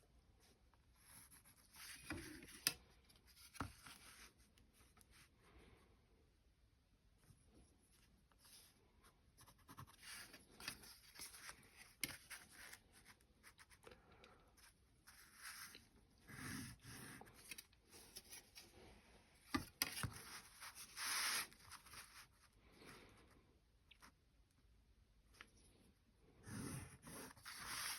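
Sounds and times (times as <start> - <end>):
drawing tool scratching paper: 26.4 - 27.9.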